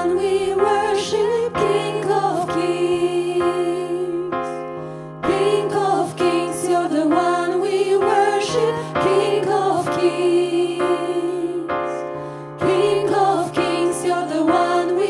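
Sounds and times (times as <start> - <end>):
person singing worship song: 0.0 - 15.0.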